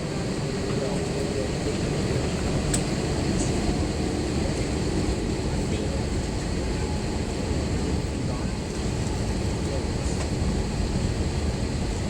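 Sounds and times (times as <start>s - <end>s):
airplane cabin engine rumble: 0.0s - 12.0s.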